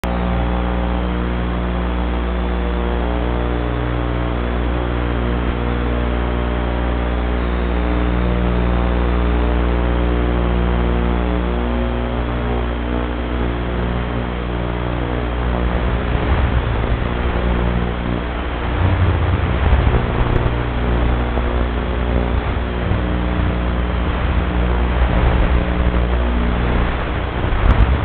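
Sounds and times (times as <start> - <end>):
electrical hum and buzz: 0.0 - 28.0
static hiss: 0.0 - 28.0.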